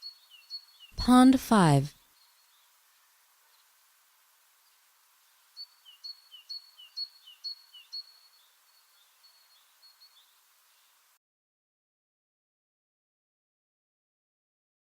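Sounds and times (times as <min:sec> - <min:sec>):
faint background hiss: 0:00.0 - 0:11.2.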